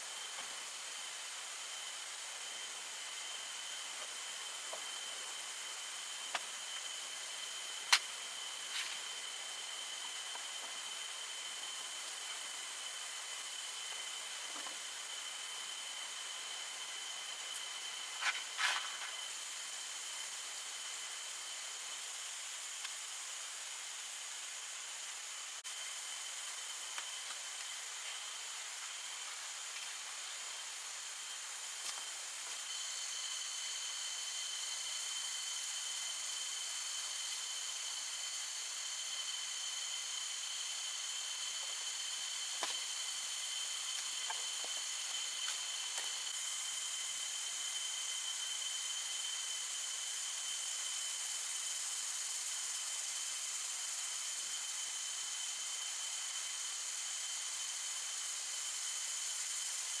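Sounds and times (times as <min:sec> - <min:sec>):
insects droning: 0:00.0 - 1:00.0.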